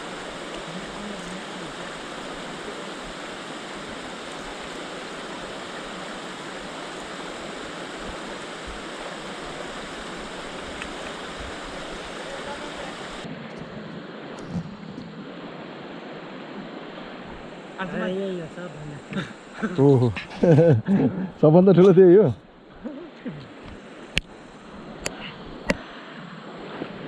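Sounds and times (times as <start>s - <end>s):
river water rushing: 0.0s - 13.4s, 15.2s - 20.0s.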